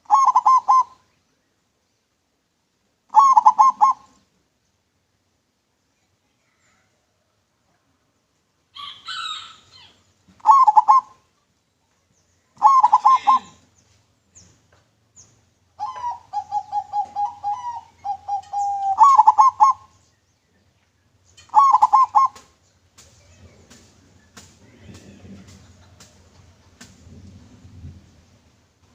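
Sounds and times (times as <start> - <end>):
dove cooing: 0.0 - 1.0, 3.1 - 4.2, 8.8 - 11.3, 12.6 - 13.6, 15.8 - 20.0, 21.4 - 22.5
small birds chirping: 8.8 - 27.4.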